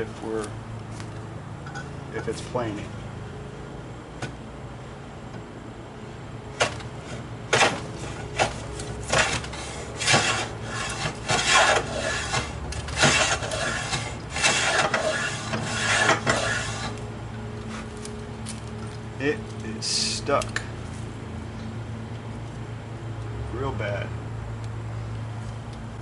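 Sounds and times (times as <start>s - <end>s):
hand plane scraping along board: 7.5s - 17.0s.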